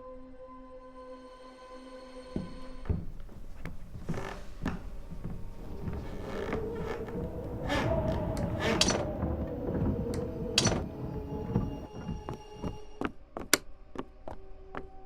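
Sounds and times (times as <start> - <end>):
creaking wavering sound: 3.2 - 12.2.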